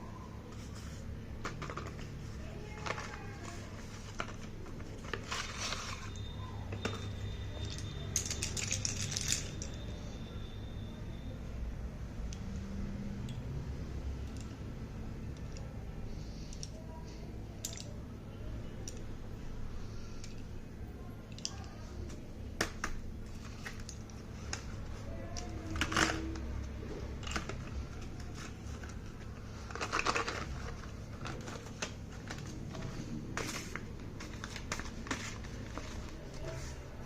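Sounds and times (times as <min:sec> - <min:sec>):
packaging crinkling: 0:01.4 - 0:09.8, 0:22.6 - 0:37.0.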